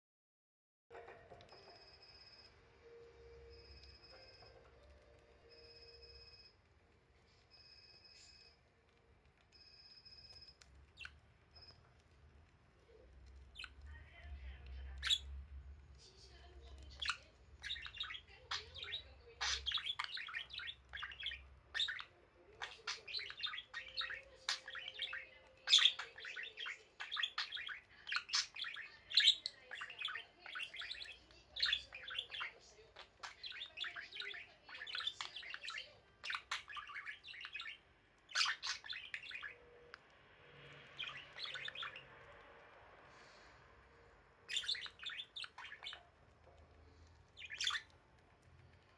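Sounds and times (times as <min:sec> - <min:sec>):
budgerigars chirping: 0:10.2 - 0:11.8, 0:13.3 - 0:13.8, 0:14.9 - 0:15.4, 0:16.7 - 0:39.8, 0:40.8 - 0:42.2, 0:44.4 - 0:46.2, 0:47.3 - 0:48.0.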